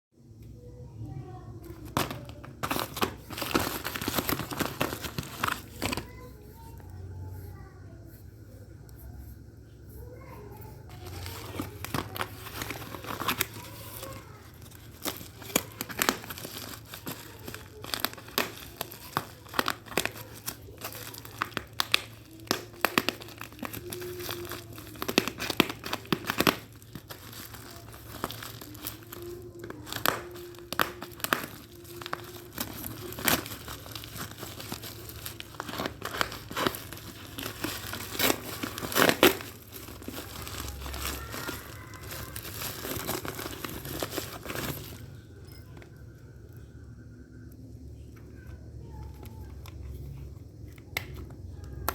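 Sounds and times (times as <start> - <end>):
packaging crinkling and tearing: 1.6 - 6.8, 10.9 - 46.0.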